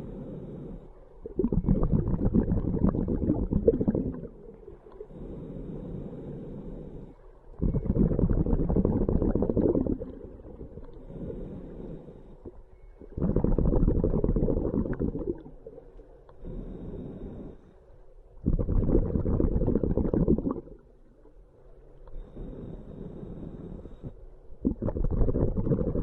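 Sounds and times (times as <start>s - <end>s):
regulator inhale: 0.0s - 1.6s, 4.9s - 15.4s, 16.3s - 18.0s, 22.1s - 24.6s
bubbling exhaust rush: 1.3s - 4.4s, 7.6s - 10.9s, 13.2s - 15.6s, 18.4s - 20.7s.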